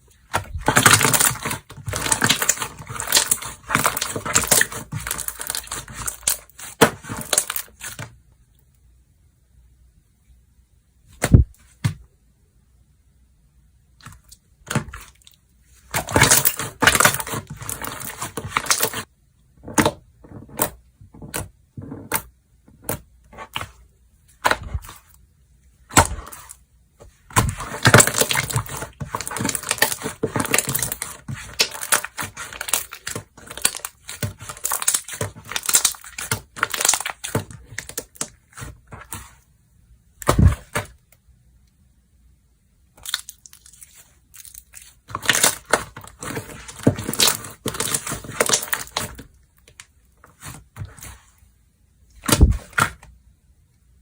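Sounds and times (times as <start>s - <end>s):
crackling and popping: 0.0s - 8.2s, 14.0s - 23.8s, 25.8s - 39.2s, 40.2s - 41.2s, 42.9s - 51.1s
slime squished by hand: 0.2s - 8.0s, 27.2s - 39.4s, 42.9s - 51.4s.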